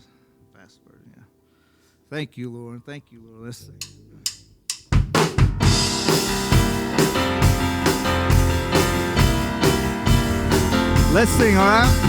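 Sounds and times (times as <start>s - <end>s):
drumstick clicks: 3.8s - 5.0s
live rock band playing: 5.6s - 12.0s.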